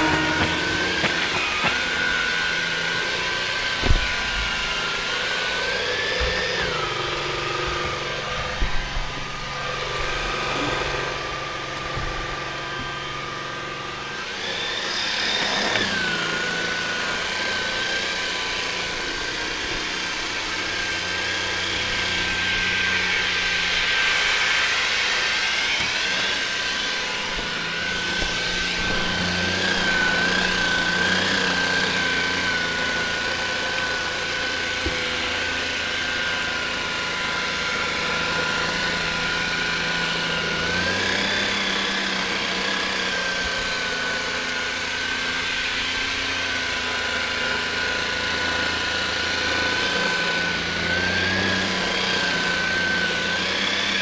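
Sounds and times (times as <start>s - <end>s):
vacuum cleaner motor whine: 0.0s - 54.0s
knock: 3.8s - 4.5s.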